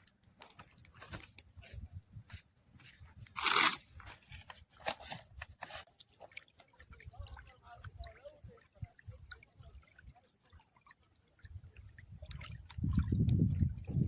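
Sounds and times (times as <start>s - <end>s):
tearing sounds: 3.3s - 4.1s.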